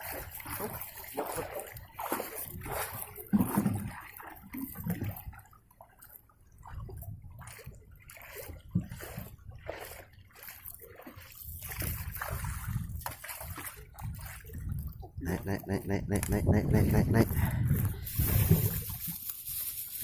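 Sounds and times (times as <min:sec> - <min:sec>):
sea water sloshing and splashing: 0:00.0 - 0:20.0.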